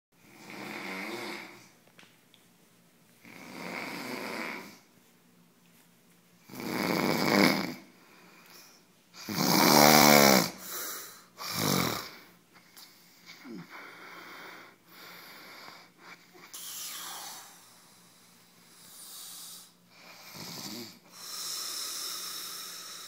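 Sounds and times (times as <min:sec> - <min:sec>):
man snoring: 0:00.2 - 0:01.7, 0:03.2 - 0:04.8, 0:06.5 - 0:07.9, 0:09.2 - 0:12.3, 0:19.0 - 0:23.0.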